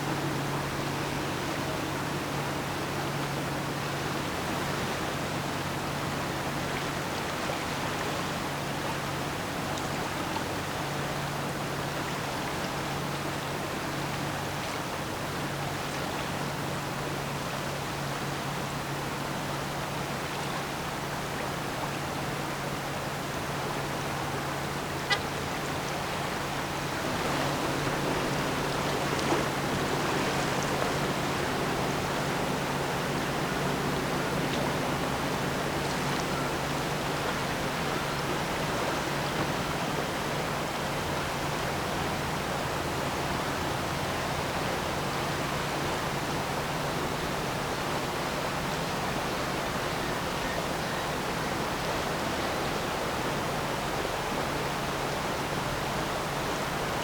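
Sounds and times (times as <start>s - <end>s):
ship engine hum: 0.0s - 56.8s
wind: 0.0s - 57.0s
water rushing: 18.4s - 57.0s.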